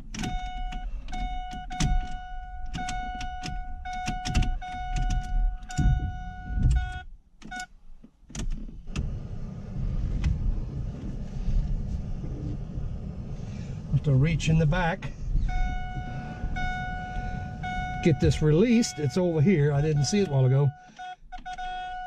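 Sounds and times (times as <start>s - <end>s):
clicks at steering column: 0.0s - 6.0s
car warning chime: 0.2s - 7.7s, 15.5s - 22.0s
low hiss and rumble: 3.5s - 20.8s.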